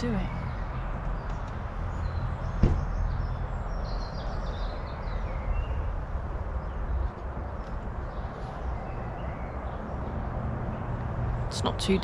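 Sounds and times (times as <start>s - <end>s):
sharp knock: 2.6s - 2.9s.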